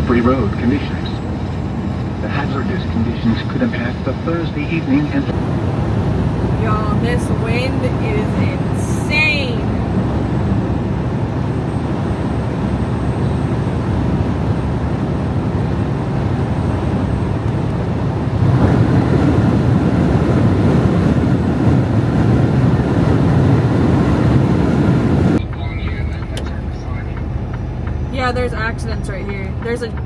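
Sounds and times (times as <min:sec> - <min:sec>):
truck engine and road noise: 0:00.0 - 0:30.0
wind buffeting truck cab: 0:00.0 - 0:30.0.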